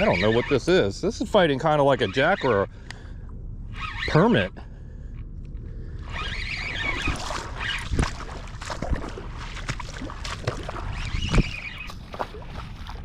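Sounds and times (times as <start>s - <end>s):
water splashing and sloshing: 5.1s - 13.0s
wind rumble on microphone: 5.4s - 13.0s.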